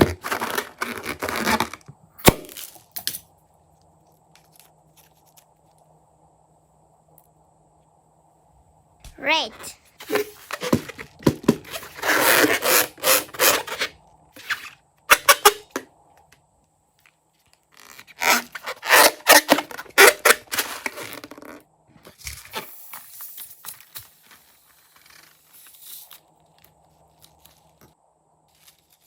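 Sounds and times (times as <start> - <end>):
balloons and slime squeaking: 11.7 - 15.6, 17.8 - 21.6.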